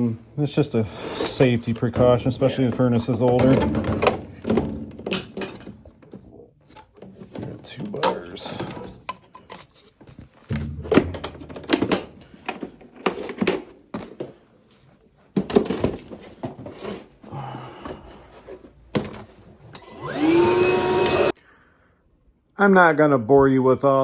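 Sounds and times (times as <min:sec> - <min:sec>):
clicks and knocks of tools: 0:03.1 - 0:14.1.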